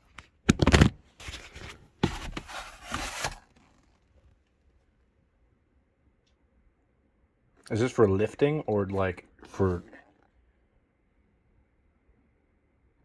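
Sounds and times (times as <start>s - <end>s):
packaging rustling and scraping: 0.5s - 4.1s.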